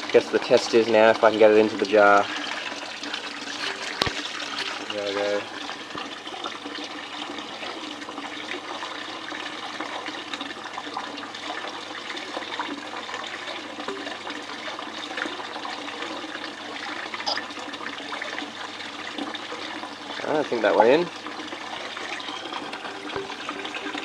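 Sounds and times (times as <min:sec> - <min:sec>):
small splashes and ticks: 0:00.0 - 0:09.2
water running over a table: 0:00.0 - 0:24.0.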